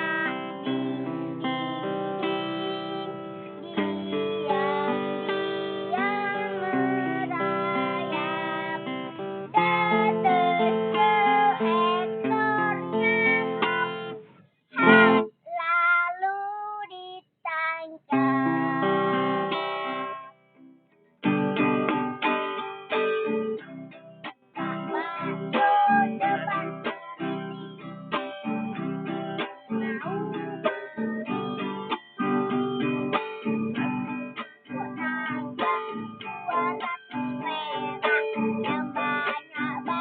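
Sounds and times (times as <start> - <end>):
strummed acoustic guitar: 0.0 - 15.5, 18.1 - 40.0
child singing: 0.0 - 19.6, 24.6 - 28.4, 29.7 - 32.9, 33.8 - 40.0.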